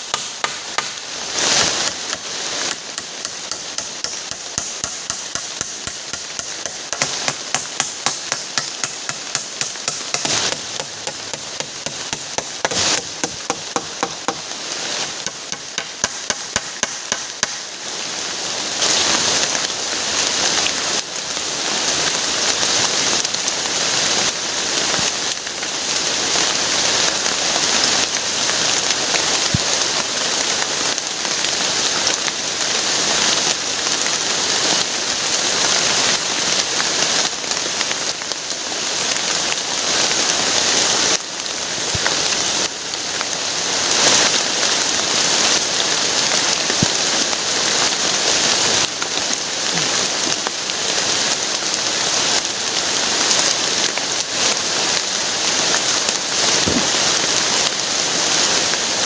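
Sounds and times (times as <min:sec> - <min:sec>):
heavy rain falling: 0:00.0 - 0:59.0
hammering knocks: 0:03.8 - 0:14.4.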